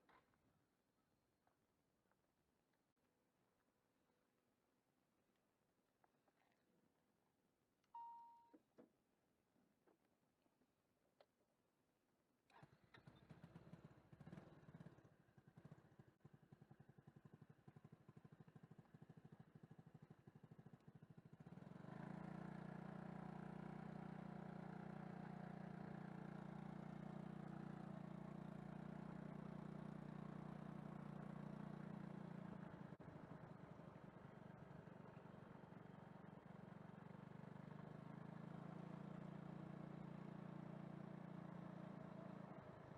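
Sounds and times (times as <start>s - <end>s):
drone with held tones: 8.0s - 8.6s.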